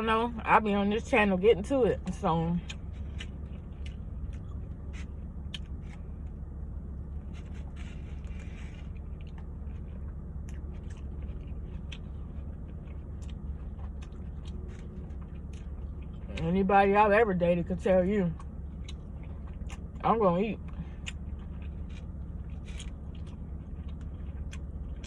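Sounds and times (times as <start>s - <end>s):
steady low hum: 0.0s - 25.0s
person chewing: 2.6s - 6.4s, 7.2s - 16.4s, 18.4s - 20.0s, 20.6s - 25.0s.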